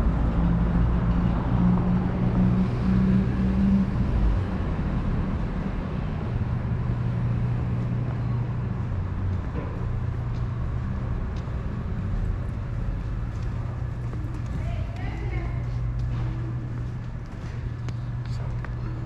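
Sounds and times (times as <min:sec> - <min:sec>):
vehicle engine low hum: 0:00.0 - 0:19.0.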